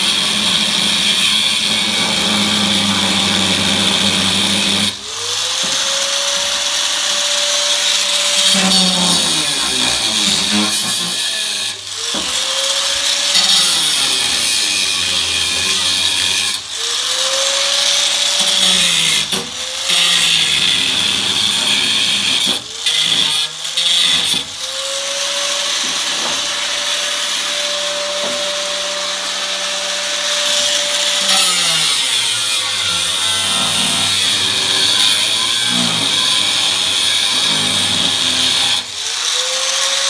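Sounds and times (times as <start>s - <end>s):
power cutting tool motor whine: 0.0s - 17.8s, 24.7s - 39.7s
grinding hiss cutting sheet metal: 25.6s - 38.9s.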